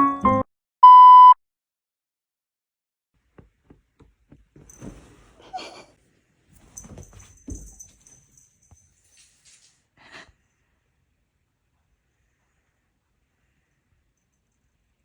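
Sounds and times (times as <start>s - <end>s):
short rustling: 4.5s - 5.9s, 6.5s - 9.8s.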